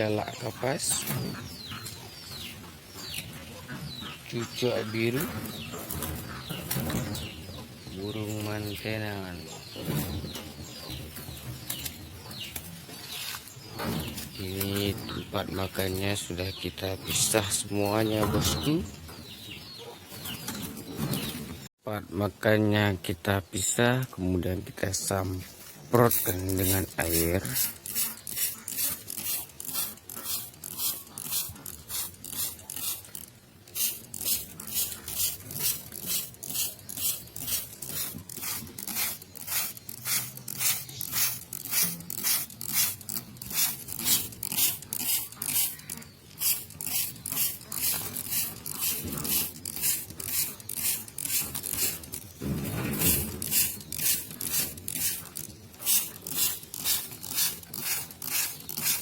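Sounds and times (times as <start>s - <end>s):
spray bottle squirting: 27.4s - 52.2s, 53.0s - 59.0s.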